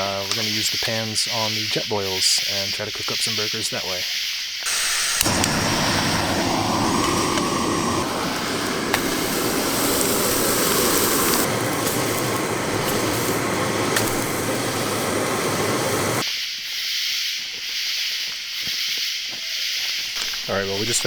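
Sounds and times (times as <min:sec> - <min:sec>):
burgers sizzling: 0:04.3 - 0:16.2
stove burner rushing: 0:04.7 - 0:16.2.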